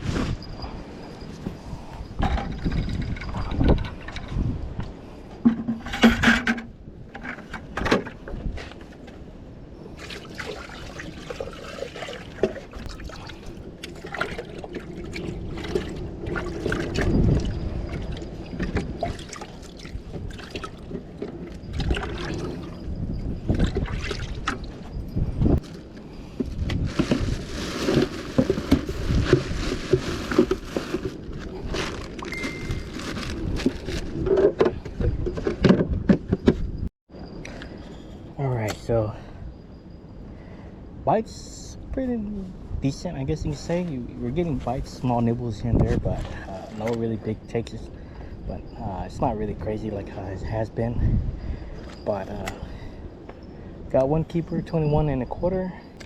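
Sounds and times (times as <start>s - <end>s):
wind buffeting microphone: 0.0s - 56.0s
water sloshing: 9.9s - 25.0s.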